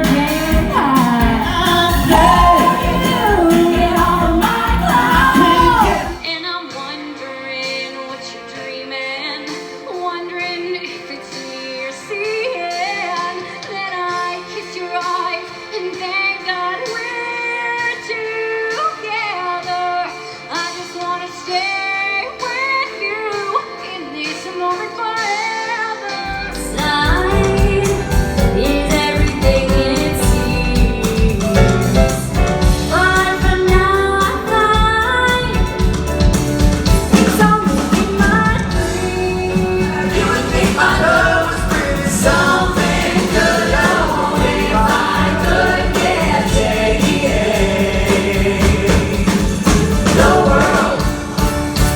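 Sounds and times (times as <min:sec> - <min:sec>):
backing music with bass and beat: 0:00.0 - 0:06.3, 0:26.2 - 0:51.9
woman singing pop song: 0:00.0 - 0:51.5.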